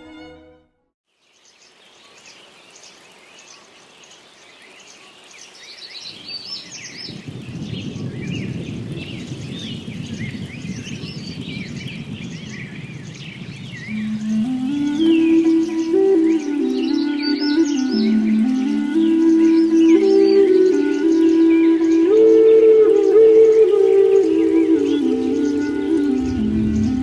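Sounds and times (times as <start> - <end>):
flock of birds calling: 13.8 - 27.0
low rushing noise: 21.9 - 27.0.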